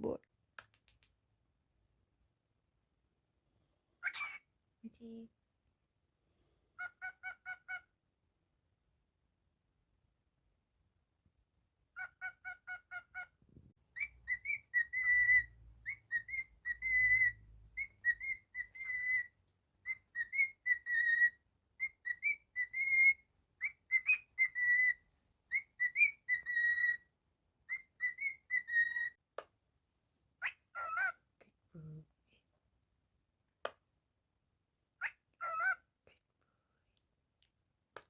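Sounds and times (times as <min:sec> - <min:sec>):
cockatiel whistling: 0:14.0 - 0:19.3, 0:19.9 - 0:27.0, 0:27.7 - 0:29.1.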